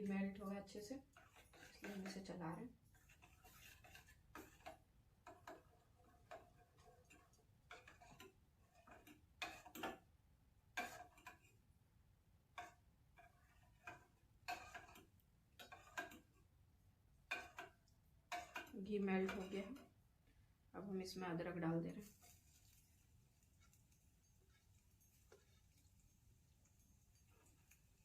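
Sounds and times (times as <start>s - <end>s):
spoon clinking and scraping pan: 0.3s - 10.1s, 10.7s - 11.6s, 12.5s - 16.5s, 17.2s - 20.0s, 24.2s - 28.0s.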